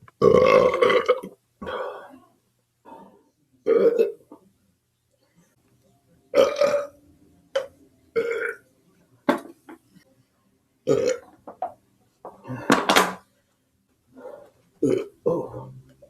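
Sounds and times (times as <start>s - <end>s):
person burping loudly: 0.2s - 1.8s, 3.6s - 4.2s, 6.4s - 6.9s, 7.6s - 8.6s, 10.9s - 11.2s, 14.8s - 15.8s.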